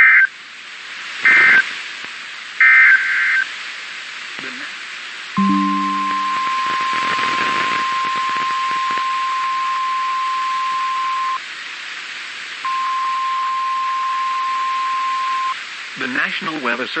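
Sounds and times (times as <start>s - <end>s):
radio hiss: 1.1s - 2.1s, 4.4s - 4.9s, 6.4s - 11.4s.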